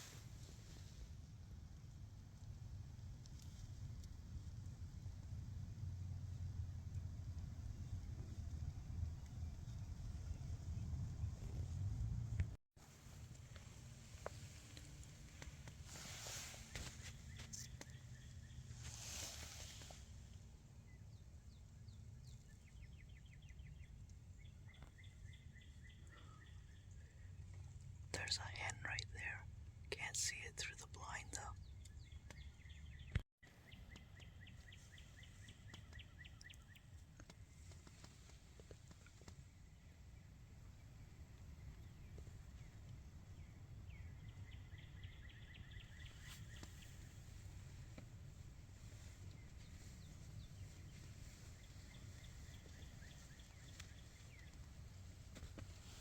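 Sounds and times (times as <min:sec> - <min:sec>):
low background rumble: 0:00.0 - 0:18.8
faint bird chirps: 0:28.1 - 0:29.4, 0:38.5 - 0:48.0, 0:48.8 - 0:56.0
songbird calls: 0:41.6 - 0:47.3.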